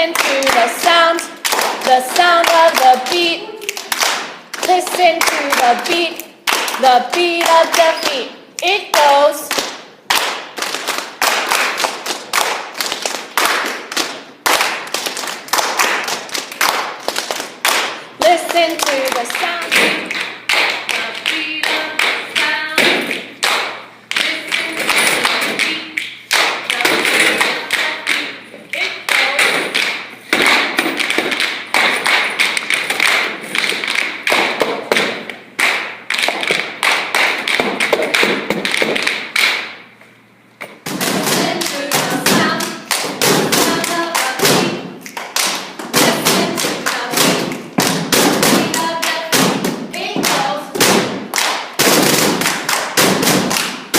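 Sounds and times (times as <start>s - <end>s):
hands clapping: 0.0s - 39.8s, 41.4s - 53.9s
feet stomping: 29.2s - 39.8s, 40.6s - 53.9s.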